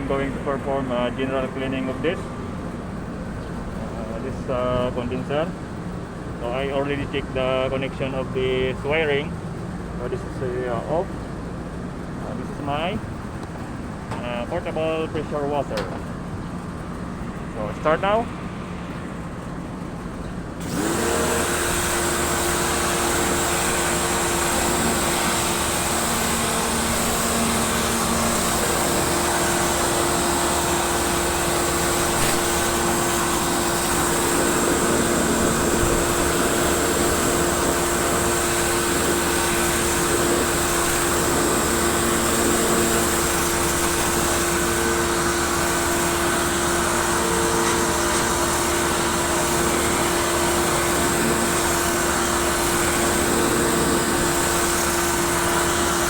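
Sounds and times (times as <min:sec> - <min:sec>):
pressure washer motor running: 0:12.6 - 0:18.9, 0:20.6 - 0:56.0
water jet hissing: 0:20.6 - 0:56.0.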